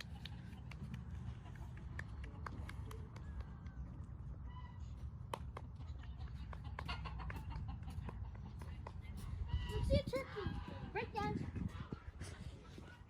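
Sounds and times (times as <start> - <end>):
wind rumbling on microphone: 6.4 - 13.0.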